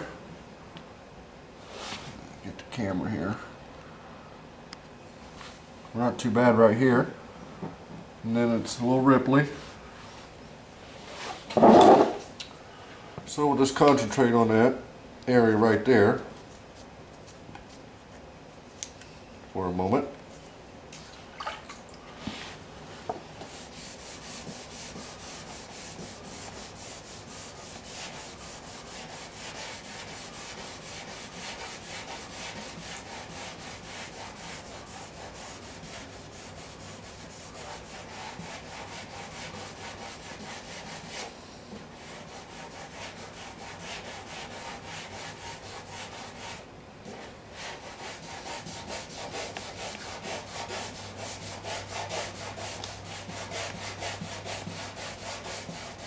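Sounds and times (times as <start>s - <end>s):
sandpaper rubbing on painted metal: 23.4s - 41.3s, 42.0s - 56.0s.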